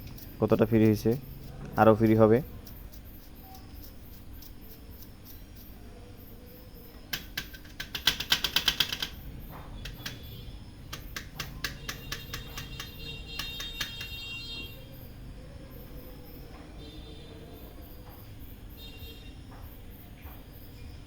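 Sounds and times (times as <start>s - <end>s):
faint high ringing squeak: 0.1s - 7.1s, 9.2s - 10.9s, 11.5s - 21.0s
gears clicking rapidly: 7.1s - 14.2s.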